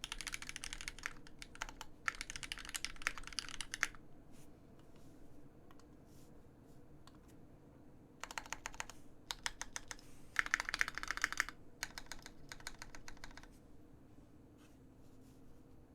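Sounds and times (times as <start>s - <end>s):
mechanical keyboard typing: 0.0s - 4.0s, 8.2s - 13.5s.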